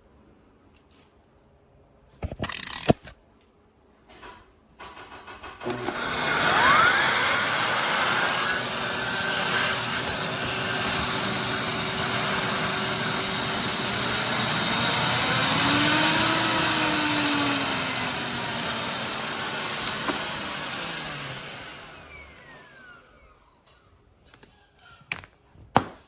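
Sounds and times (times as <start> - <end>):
vacuum cleaner motor whooshing: 5.6 - 23.5.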